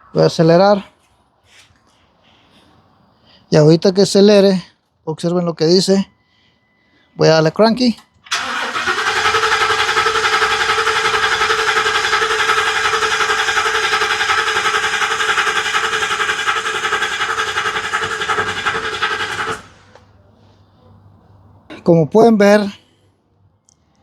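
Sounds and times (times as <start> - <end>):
starter cranking engine: 8.3 - 20.0.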